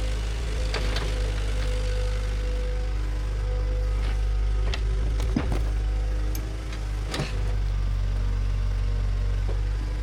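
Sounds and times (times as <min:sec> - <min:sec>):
bulldozer engine rumbling: 0:00.0 - 0:10.0.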